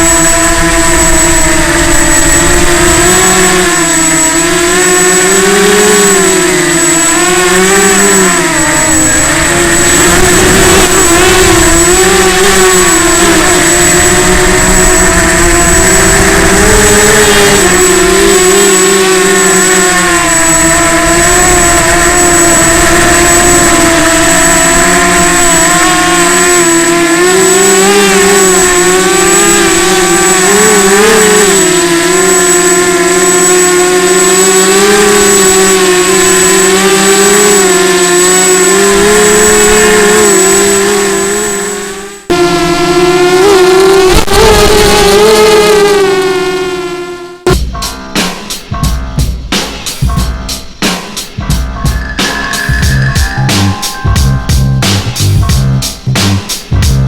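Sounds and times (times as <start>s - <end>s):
drone motors whining: 0.0s - 47.6s, 51.8s - 56.3s
thin high tone: 51.6s - 56.0s.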